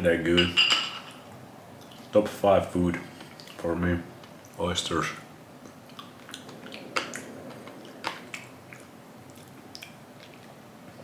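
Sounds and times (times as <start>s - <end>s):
person chewing wetly: 3.2s - 3.6s, 5.6s - 11.0s.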